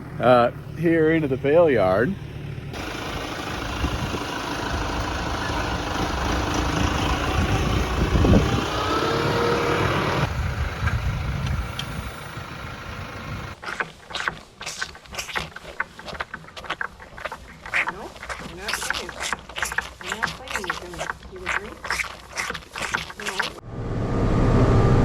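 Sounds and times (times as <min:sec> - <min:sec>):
farm vehicle engine rumbling: 0:00.0 - 0:23.8
rising whine: 0:23.6 - 0:25.0.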